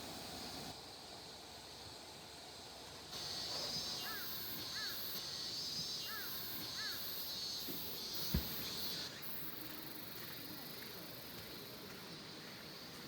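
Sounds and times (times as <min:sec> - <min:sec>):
cicadas buzzing in chorus: 0:00.0 - 0:13.0
bird calling: 0:04.0 - 0:05.0, 0:06.0 - 0:07.1.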